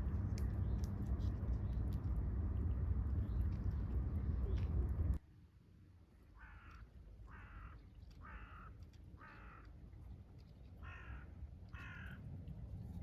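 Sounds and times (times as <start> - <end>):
crow cawing: 6.4 - 9.6, 10.8 - 12.2.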